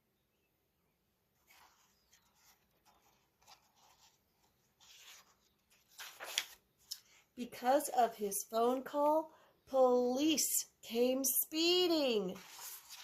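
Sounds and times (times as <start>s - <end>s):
book pages rustling and turning: 1.4s - 7.1s, 12.2s - 13.0s.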